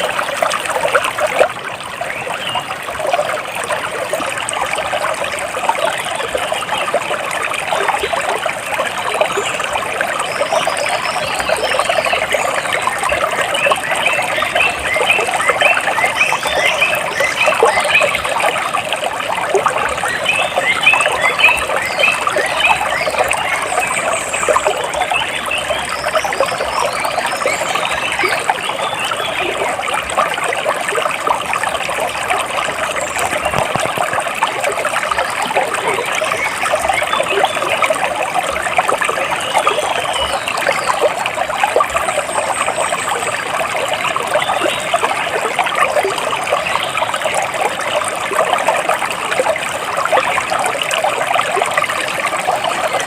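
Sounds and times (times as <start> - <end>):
water splashing and trickling: 0.0 - 53.0.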